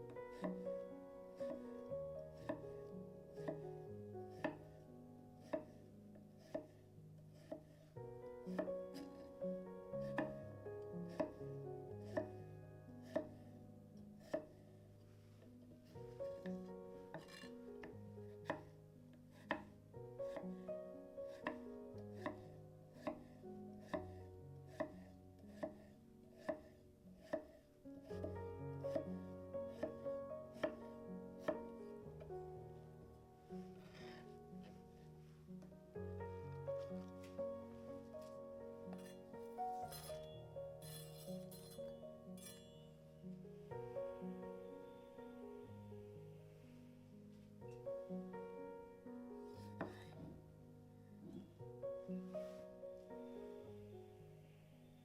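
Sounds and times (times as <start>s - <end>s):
soft instrumental music: 0.0s - 55.0s
knife chopping on cutting board: 6.4s - 6.7s, 7.4s - 7.6s, 11.1s - 11.4s, 13.0s - 13.4s, 14.2s - 14.4s, 23.0s - 23.2s, 25.6s - 25.8s, 30.6s - 30.8s.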